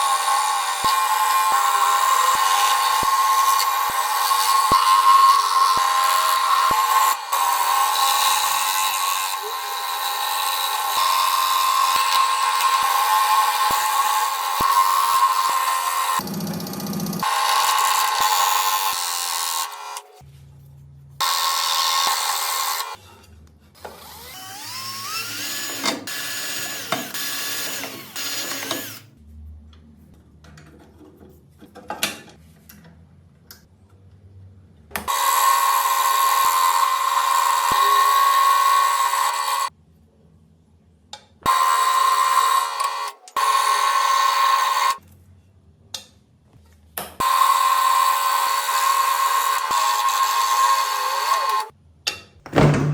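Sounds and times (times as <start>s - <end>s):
power tool motor whining: 0.0s - 20.0s, 23.9s - 29.1s.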